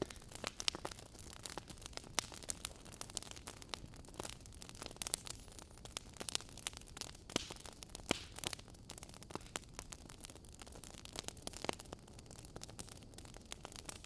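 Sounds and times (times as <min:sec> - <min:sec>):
wood fire crackling and popping: 0:00.0 - 0:14.0.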